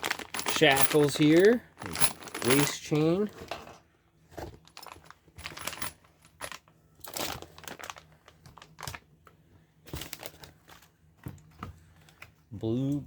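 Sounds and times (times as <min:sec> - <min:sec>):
packing material crinkling: 0:00.0 - 0:02.9, 0:04.6 - 0:09.1.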